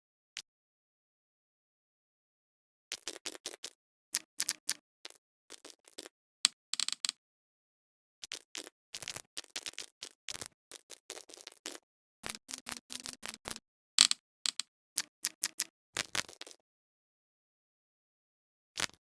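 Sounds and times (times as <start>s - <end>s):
fidget toys clicking and popping: 2.9s - 7.2s, 8.2s - 16.6s.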